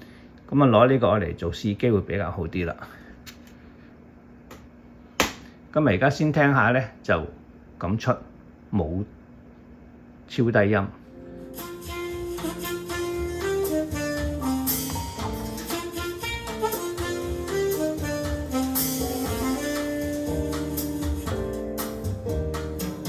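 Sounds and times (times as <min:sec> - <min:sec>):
saxophone melody: 0:11.4 - 0:22.6
drum kit: 0:11.5 - 0:23.0.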